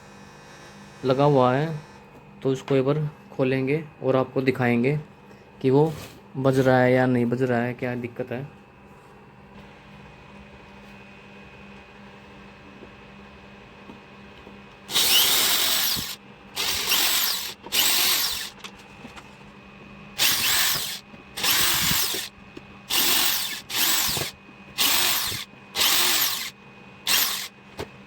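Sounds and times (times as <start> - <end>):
electric screwdriver whirring: 14.9 - 18.6, 20.2 - 22.3, 22.9 - 27.5.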